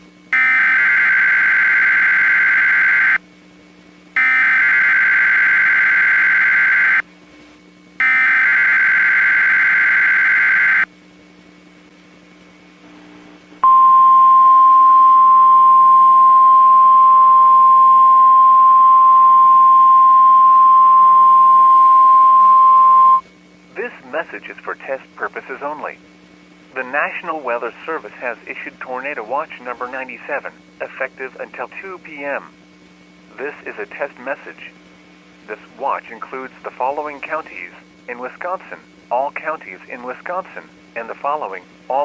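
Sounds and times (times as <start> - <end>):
warning alarm tone: 0.3 - 3.2, 4.2 - 7.0, 8.0 - 10.9, 13.6 - 23.2.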